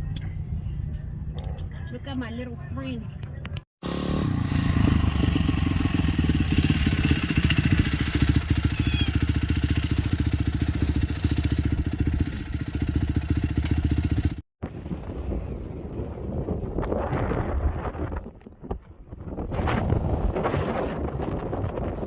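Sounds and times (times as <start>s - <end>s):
vehicle engine running: 0.0s - 14.4s
wind on microphone: 14.6s - 22.0s.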